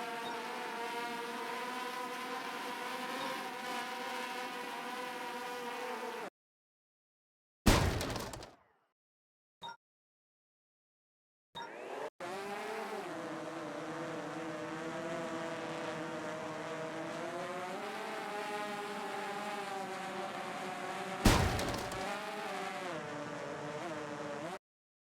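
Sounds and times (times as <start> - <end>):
drone motors whining: 0.0 - 6.3, 11.6 - 24.6.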